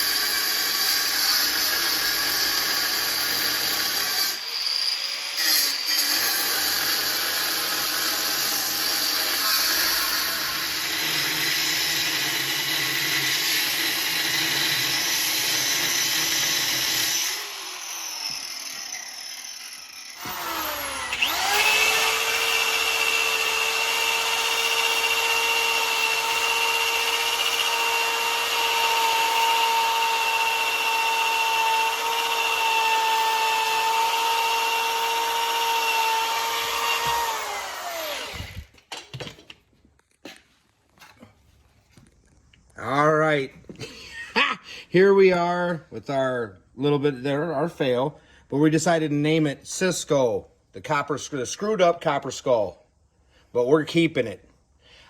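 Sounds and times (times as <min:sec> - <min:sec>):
angle grinder grinding metal: 0:00.0 - 0:39.2.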